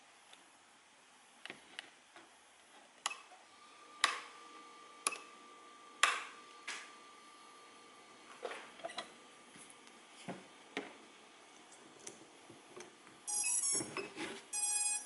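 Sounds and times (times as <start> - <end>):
faint high-pitched electronic tone: 13.3 - 15.0.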